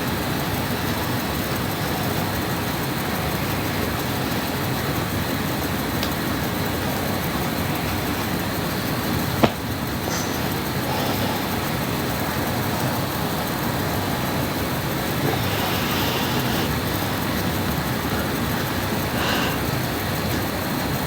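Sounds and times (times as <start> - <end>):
steady background noise: 0.0 - 21.0
woman snoring: 13.2 - 19.9.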